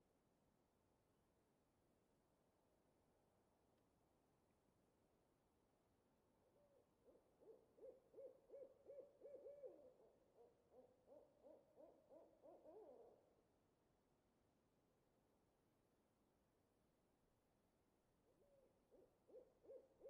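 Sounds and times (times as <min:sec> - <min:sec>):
distant owl hooting: 0:06.7 - 0:13.2, 0:18.4 - 0:20.0.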